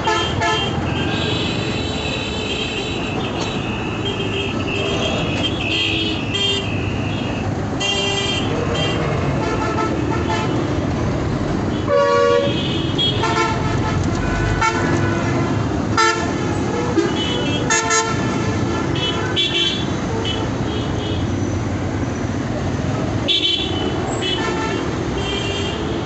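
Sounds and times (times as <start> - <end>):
vehicle horns honking: 0.0 - 10.7, 11.7 - 21.4, 23.2 - 26.0
engine rumble and road noise: 0.0 - 26.0.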